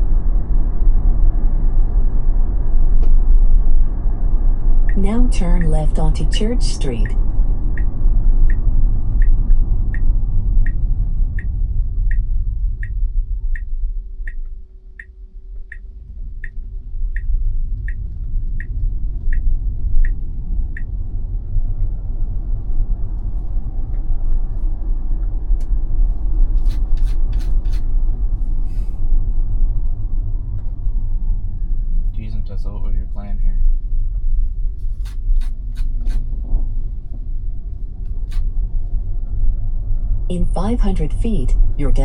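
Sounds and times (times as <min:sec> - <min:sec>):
turn signal ticking: 0:11.4 - 0:13.0, 0:13.6 - 0:20.9.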